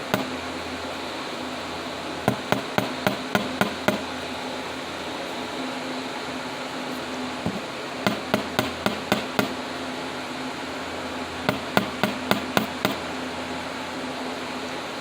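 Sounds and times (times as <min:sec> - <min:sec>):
steel block tapping wire: 0:00.0 - 0:00.4, 0:02.3 - 0:04.2, 0:07.5 - 0:09.6, 0:11.5 - 0:13.1
steady hum: 0:00.0 - 0:14.1.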